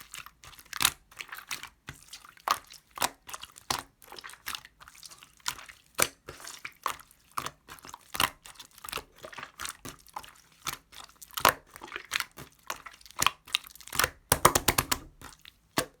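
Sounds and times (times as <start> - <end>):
slime squished by hand: 13.2 - 16.0.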